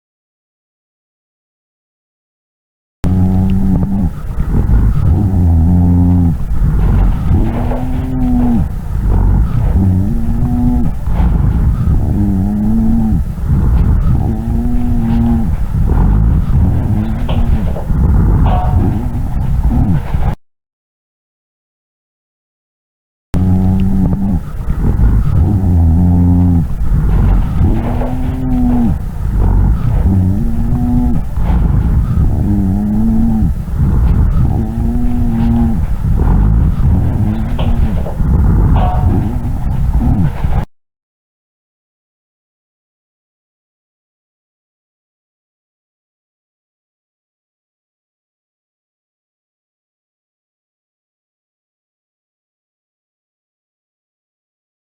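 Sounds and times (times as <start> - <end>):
low rumbling breath noise: 3.0 - 20.4, 23.4 - 40.7
rhonchi lung sounds: 3.0 - 20.4, 23.4 - 40.7.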